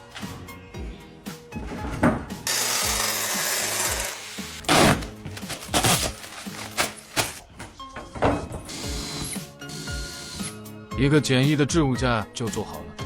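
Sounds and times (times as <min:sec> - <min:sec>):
quiet background music: 0:00.0 - 0:13.0
power tool cutting: 0:02.5 - 0:06.6.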